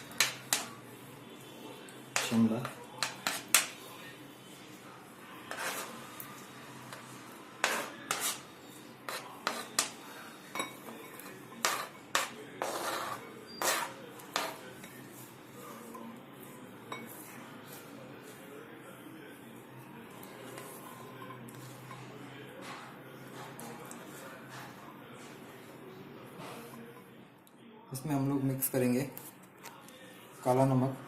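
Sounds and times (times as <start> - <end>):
spoon scraping bowl: 2.1 - 3.8, 5.4 - 18.4, 20.2 - 24.9.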